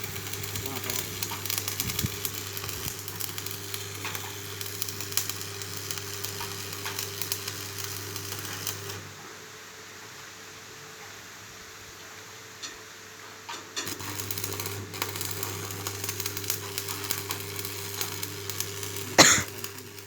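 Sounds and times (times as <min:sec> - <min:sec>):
welding arc crackling: 0:00.0 - 0:09.2, 0:13.8 - 0:20.0
low electrical hum: 0:00.0 - 0:20.0.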